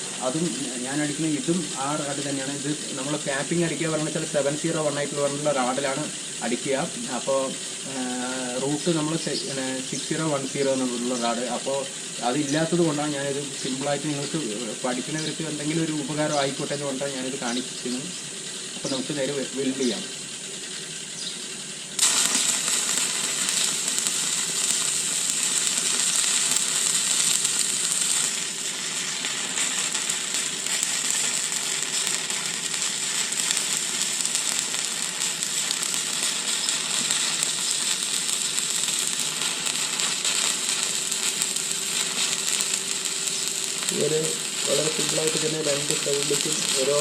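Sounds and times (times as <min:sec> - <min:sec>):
welding arc sizzle: 0:00.0 - 0:47.0
welding arc strike: 0:00.0 - 0:47.0.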